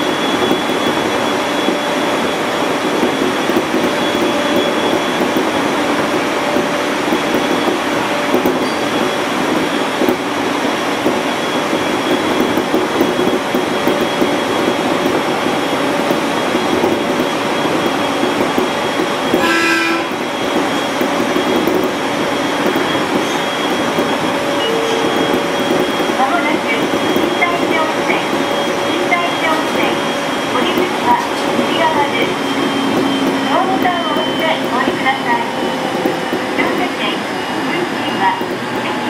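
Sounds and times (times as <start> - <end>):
train motor whine: 0.0 - 39.0
train wheels rumbling on rail: 0.0 - 39.0
brief pitched tone: 24.6 - 35.0.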